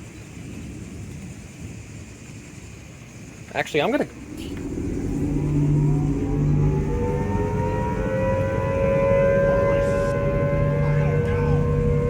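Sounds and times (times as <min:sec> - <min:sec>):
tornado warning siren: 0:03.2 - 0:12.0.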